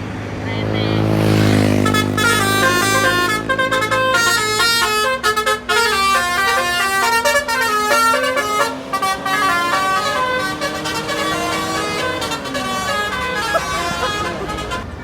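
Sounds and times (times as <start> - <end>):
multi-tone bus horn tune: 0.6 - 15.0.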